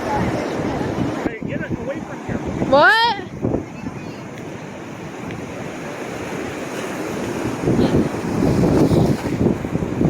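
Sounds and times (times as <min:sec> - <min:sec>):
surf breaking on beach: 0:00.0 - 0:10.0
wind buffeting microphone: 0:00.0 - 0:10.0.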